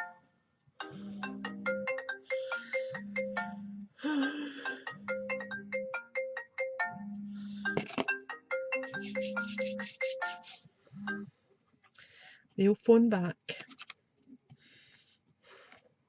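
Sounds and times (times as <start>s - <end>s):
low phone vibration buzz: 0.8s - 4.1s, 7.0s - 7.7s
phone ringtone melody: 0.8s - 11.3s.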